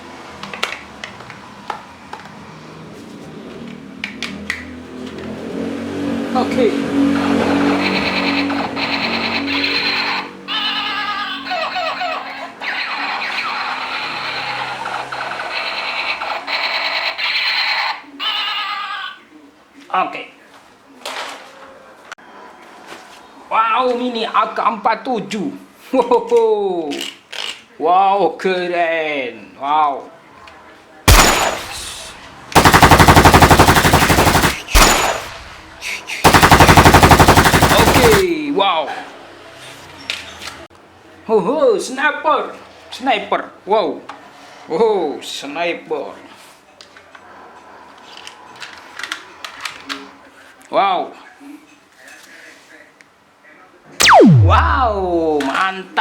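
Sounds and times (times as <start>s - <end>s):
loud bang: 31.1s - 32.1s, 54.0s - 55.5s
toy gun laser zaps: 31.1s - 35.7s, 36.3s - 38.3s, 54.0s - 55.4s
rapid pulsing electronic tone: 54.0s - 55.4s.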